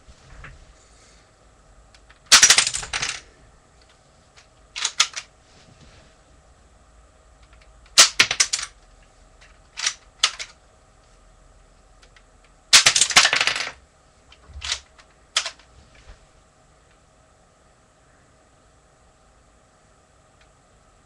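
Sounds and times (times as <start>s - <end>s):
plastic bricks clicking and rattling: 2.3s - 3.2s, 7.4s - 8.8s, 9.4s - 10.6s, 12.8s - 13.8s, 14.6s - 15.6s.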